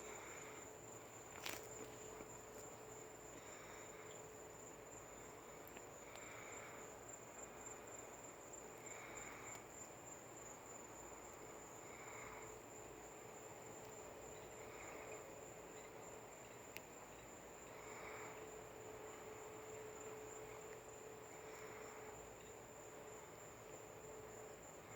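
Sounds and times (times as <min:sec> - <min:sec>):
insect trill: 0:00.0 - 0:24.9.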